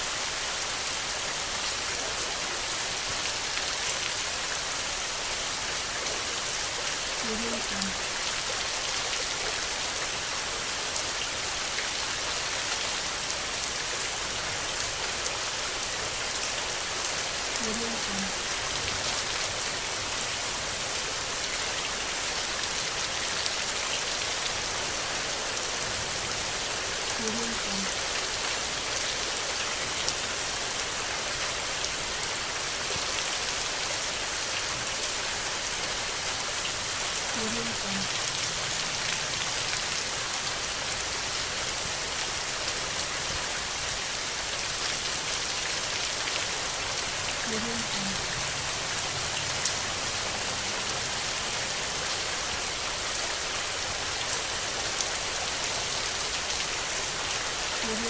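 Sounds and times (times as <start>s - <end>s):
steady rain hiss: 0.0s - 58.0s.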